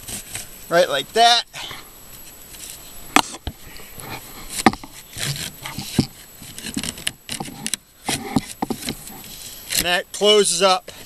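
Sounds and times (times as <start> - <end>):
rubbing scrapes: 3.9 - 9.8.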